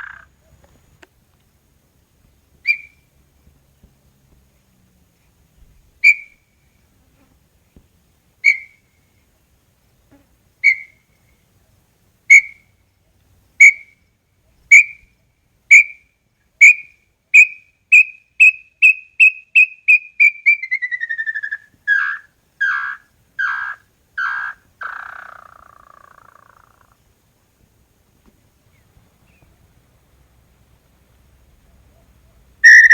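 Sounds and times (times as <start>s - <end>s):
bird whistled notes and trill: 2.7s - 3.0s, 6.0s - 6.4s, 8.4s - 8.8s, 10.6s - 11.0s, 16.6s - 26.0s, 32.6s - 32.9s.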